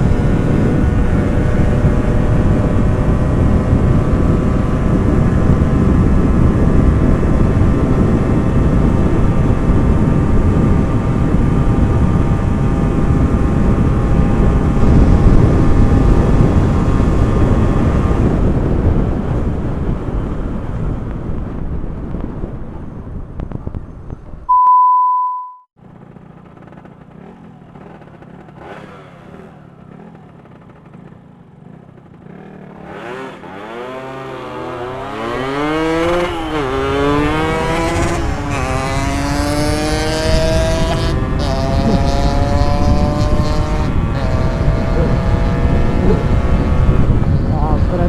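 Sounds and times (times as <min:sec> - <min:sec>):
two-stroke motorcycle accelerating: 0:00.0 - 0:24.4, 0:25.8 - 0:48.0
wind rush: 0:00.0 - 0:24.5, 0:33.0 - 0:48.0
loud steady beep: 0:24.5 - 0:25.7.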